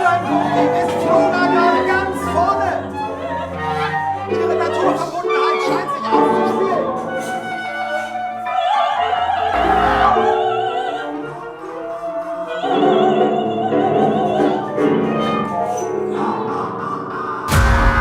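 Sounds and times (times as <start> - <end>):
operatic voice singing: 0.0 - 18.0
instrumental accompaniment: 9.4 - 12.1.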